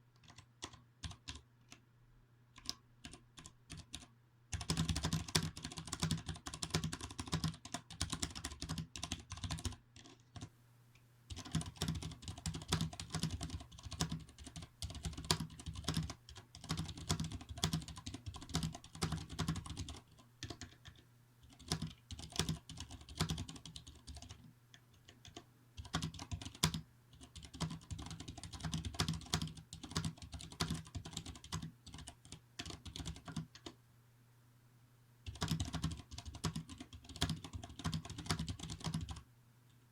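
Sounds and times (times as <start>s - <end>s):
fast typing on mechanical keyboard: 0.2s - 1.4s, 2.6s - 10.5s, 11.3s - 33.8s, 35.3s - 39.2s.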